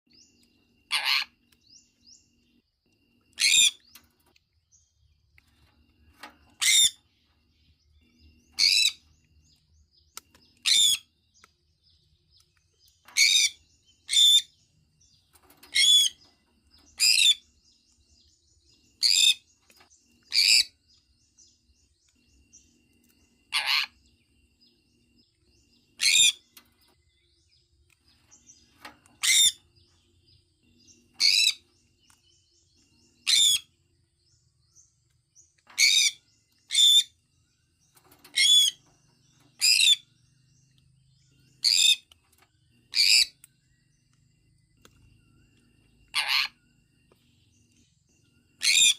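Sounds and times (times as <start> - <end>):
parrot chirping calls: 0.8 - 1.5, 3.3 - 3.8, 6.5 - 7.1, 8.5 - 9.0, 10.6 - 11.2, 13.1 - 14.5, 15.7 - 16.2, 20.3 - 20.8, 23.5 - 24.1, 25.9 - 26.5, 29.2 - 29.6, 31.0 - 31.7, 33.2 - 33.7, 35.8 - 37.2, 39.6 - 40.1, 41.6 - 42.1, 42.9 - 43.4, 46.1 - 46.6, 48.6 - 48.9.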